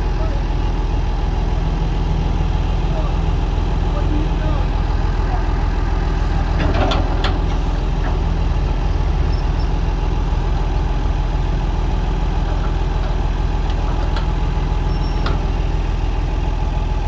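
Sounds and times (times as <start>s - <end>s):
heavy diesel engine idling: 0.0s - 17.0s.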